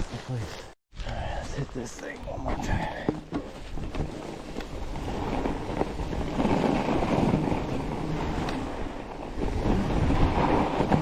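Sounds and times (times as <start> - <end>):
bike tyres rolling on snow: 1.8 - 11.0
wind on microphone: 4.6 - 11.0.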